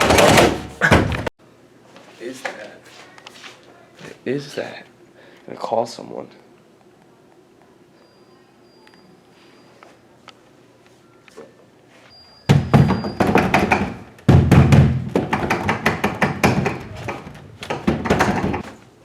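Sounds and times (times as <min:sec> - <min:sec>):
locked door banging and rattling: 0:00.0 - 0:01.3, 0:12.5 - 0:18.8.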